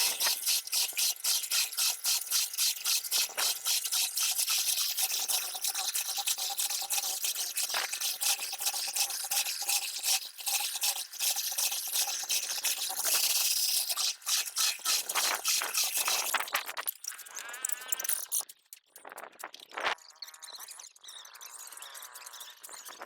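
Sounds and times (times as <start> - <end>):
rhythmic scraping strokes: 0.0 - 9.2.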